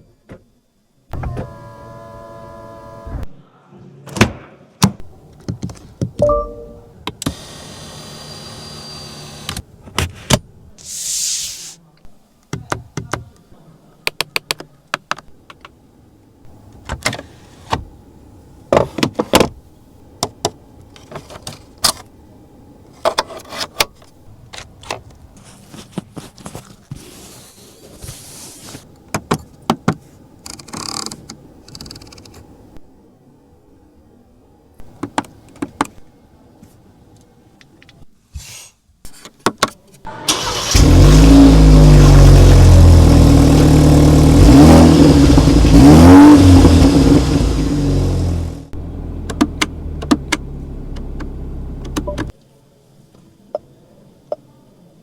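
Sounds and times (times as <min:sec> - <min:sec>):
short hisses: 0:10.8 - 0:11.8
car switches and latches clicking: 0:49.2 - 0:52.3.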